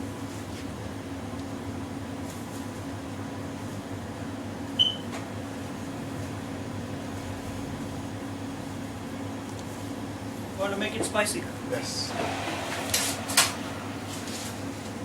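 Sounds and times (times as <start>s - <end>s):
toaster oven humming: 0.0s - 15.0s.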